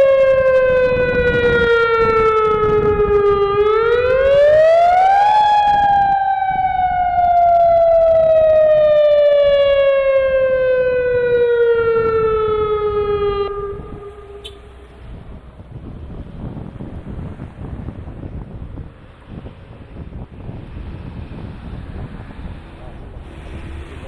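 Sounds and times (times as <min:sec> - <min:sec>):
warning siren: 0:00.0 - 0:15.5.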